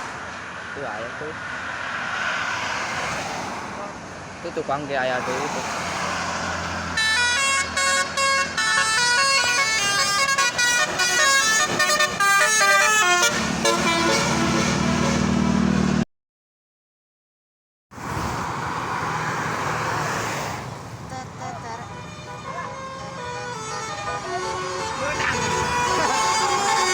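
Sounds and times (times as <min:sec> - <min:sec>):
rushing traffic noise: 0:00.0 - 0:16.1, 0:17.9 - 0:26.9
multi-tone bus horn melody: 0:06.9 - 0:15.8, 0:21.0 - 0:26.9.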